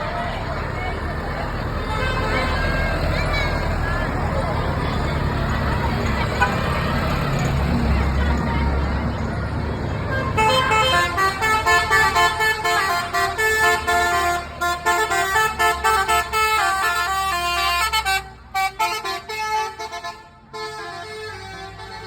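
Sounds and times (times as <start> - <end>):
bus engine running: 0.0 - 22.0
musical bus horn tune: 1.8 - 4.2, 10.1 - 22.0.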